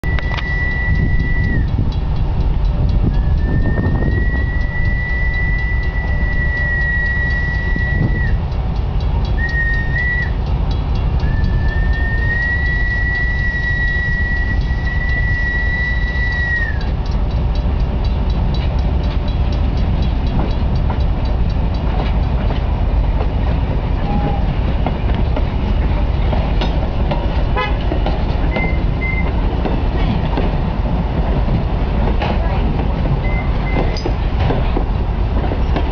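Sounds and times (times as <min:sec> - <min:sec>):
train whistle: 0:00.0 - 0:01.8, 0:03.1 - 0:08.4, 0:09.3 - 0:10.4, 0:11.2 - 0:16.9, 0:24.0 - 0:24.5, 0:27.6 - 0:27.8, 0:28.5 - 0:29.3
train rumbling past: 0:00.0 - 0:35.9
wheels clicking over rail joints: 0:00.0 - 0:35.9.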